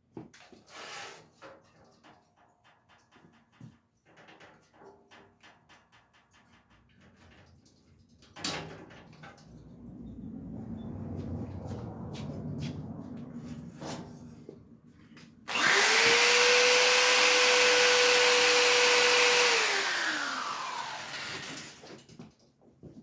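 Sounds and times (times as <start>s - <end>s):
electric power tool whine: 15.5s - 21.9s.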